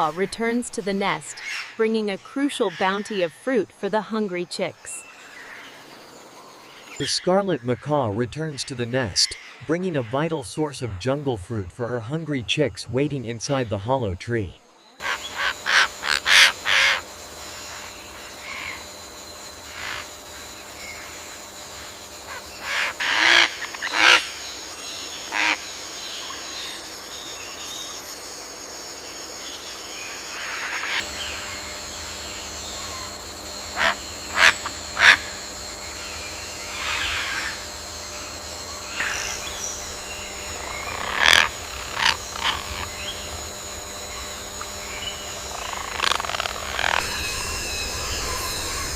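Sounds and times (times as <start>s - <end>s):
steady high hum: 0.0s - 2.1s, 15.0s - 48.9s
harsh animal calls: 15.0s - 26.5s, 30.4s - 48.9s.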